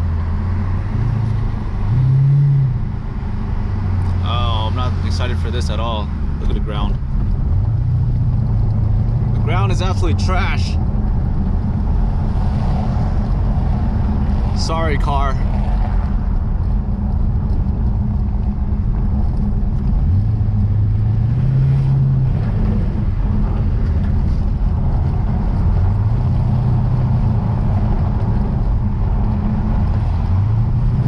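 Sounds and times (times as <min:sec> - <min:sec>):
car engine accelerating: 0:00.0 - 0:31.0
tyres rumbling on rough road: 0:00.0 - 0:31.0.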